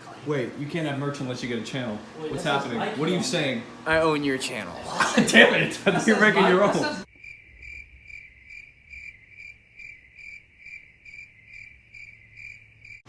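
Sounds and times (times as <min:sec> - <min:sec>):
crickets chirping: 0:07.0 - 0:13.0.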